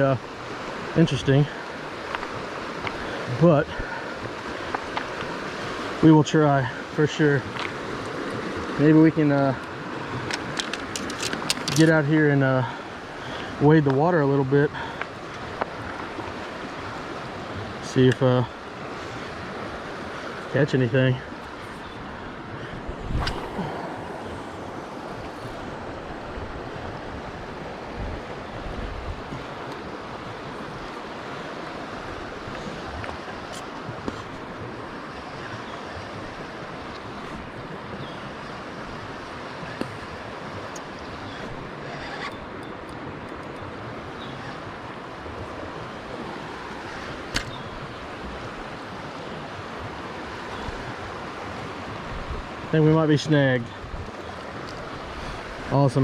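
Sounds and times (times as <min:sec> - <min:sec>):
creek water rushing over rocks: 0:00.0 - 0:56.0
wind buffeting microphone: 0:21.2 - 0:52.8, 0:53.7 - 0:56.0
sharp click: 0:47.3 - 0:47.6.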